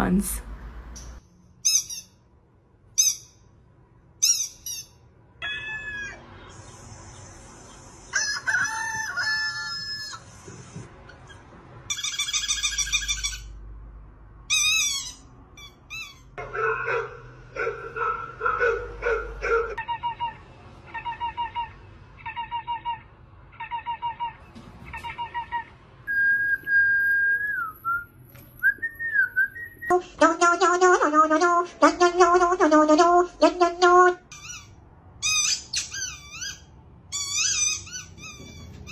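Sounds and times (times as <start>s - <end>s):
pitched animal-like calls: 5.4s - 6.6s, 18.7s - 25.8s.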